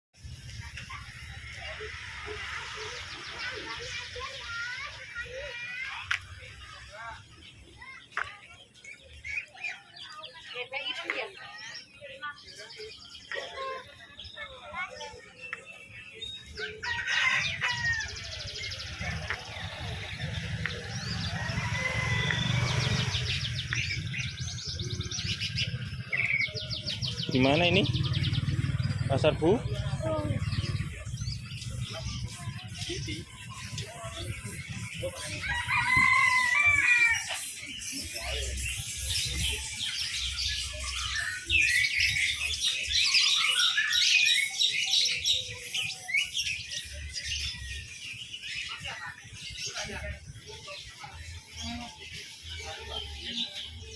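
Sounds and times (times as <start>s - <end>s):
songbirds chirping and trilling: 0.2s - 53.9s
steady low rumble: 26.8s - 35.4s.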